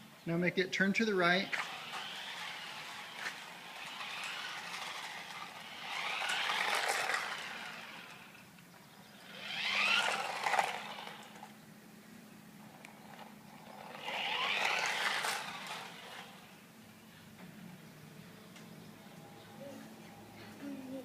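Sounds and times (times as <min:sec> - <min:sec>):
toy car electric motor whining: 0:01.4 - 0:11.6, 0:13.0 - 0:16.6.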